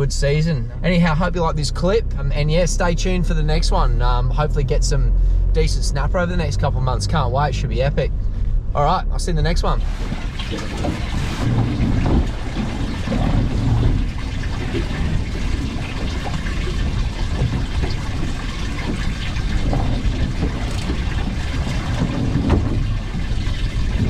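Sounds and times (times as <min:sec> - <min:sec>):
steady low rumble: 0:00.0 - 0:24.0
water sloshing against boat hull: 0:09.5 - 0:24.0.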